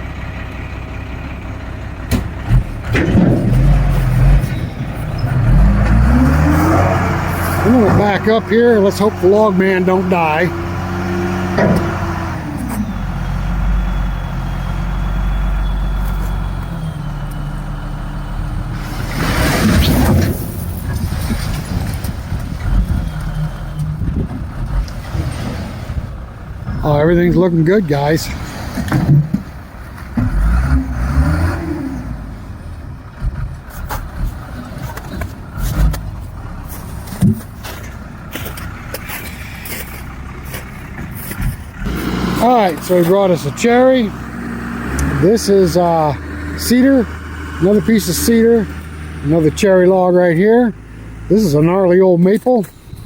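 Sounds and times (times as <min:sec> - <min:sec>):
truck engine running: 0:00.0 - 0:53.0
knocks and clunks: 0:02.0 - 0:08.2, 0:11.5 - 0:12.8, 0:18.8 - 0:26.1, 0:28.3 - 0:30.9, 0:33.2 - 0:45.6.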